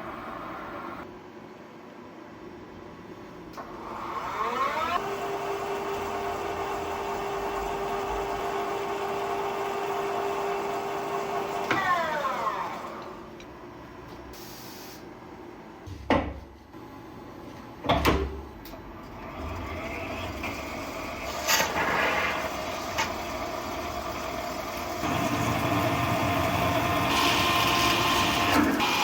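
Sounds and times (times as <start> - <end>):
lathe whining and spinning down: 3.6 - 13.2, 19.1 - 29.0.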